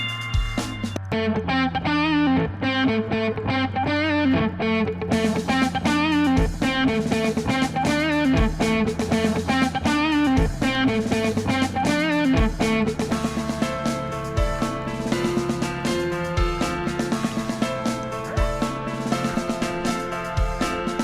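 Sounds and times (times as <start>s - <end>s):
steady bass: 0.0s - 21.0s
electric guitar melody with vibrato: 0.4s - 21.0s
low beat: 5.1s - 21.0s.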